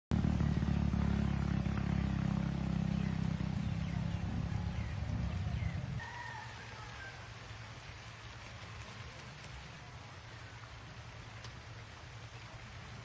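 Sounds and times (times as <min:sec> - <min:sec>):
low engine hum: 0:00.1 - 0:06.1.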